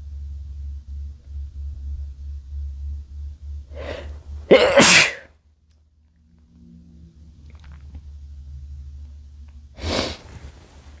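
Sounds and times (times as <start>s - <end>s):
faint breathing: 3.7s - 4.4s, 9.8s - 11.0s
man sneezing: 3.9s - 5.3s.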